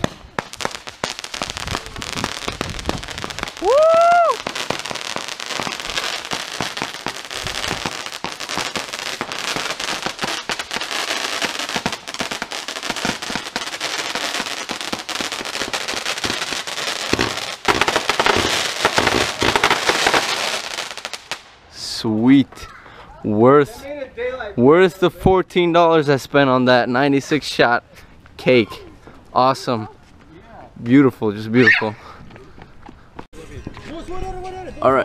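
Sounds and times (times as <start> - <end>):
fireworks firing with crackling: 0.0 - 21.6.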